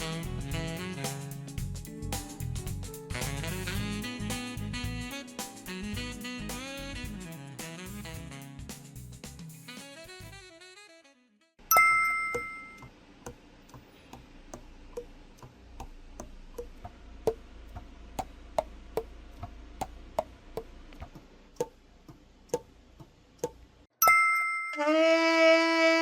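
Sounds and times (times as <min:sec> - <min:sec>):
sharp ringing ding: 0:11.7 - 0:12.8, 0:24.0 - 0:24.8.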